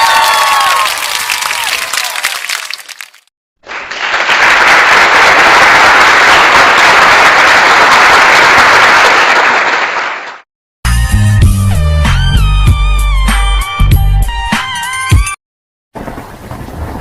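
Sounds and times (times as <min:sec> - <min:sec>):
crowd applauding: 0:00.0 - 0:10.5.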